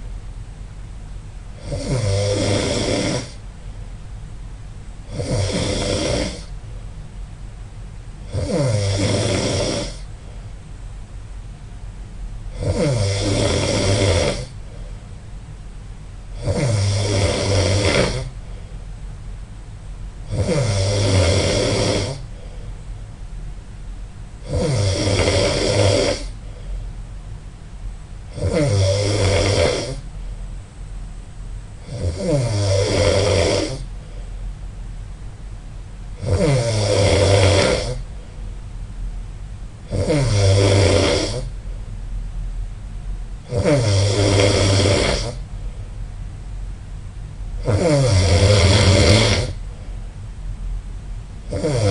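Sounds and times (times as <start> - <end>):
person snoring loudly: 1.6 - 3.4, 5.1 - 6.5, 8.2 - 10.1, 12.5 - 14.6, 16.3 - 18.4, 20.3 - 22.4, 24.4 - 26.4, 28.3 - 30.1, 31.8 - 33.9, 36.2 - 38.1, 39.9 - 41.6, 43.4 - 45.4, 47.6 - 49.6, 51.4 - 51.9
quiet breathing: 8.9 - 10.6, 12.7 - 15.2, 16.3 - 19.0, 20.4 - 23.0, 25.0 - 27.2, 33.6 - 34.6, 49.3 - 50.2.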